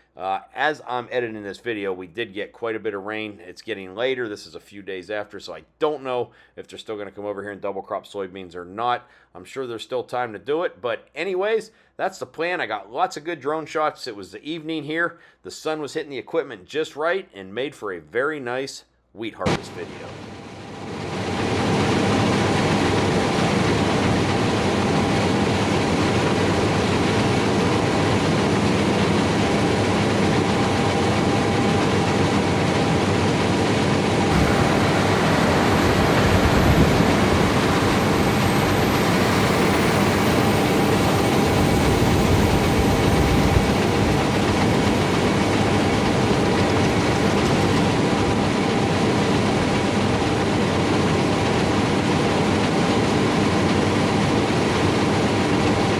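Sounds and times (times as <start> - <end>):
steady mechanical hums: 19.5 - 55.9
harvest machinery rumbling: 22.3 - 48.0.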